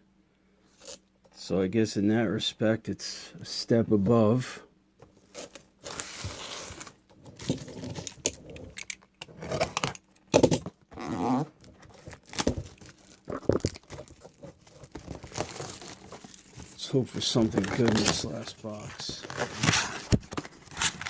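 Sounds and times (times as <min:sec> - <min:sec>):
packaging tearing and crinkling: 0:11.9 - 0:21.0.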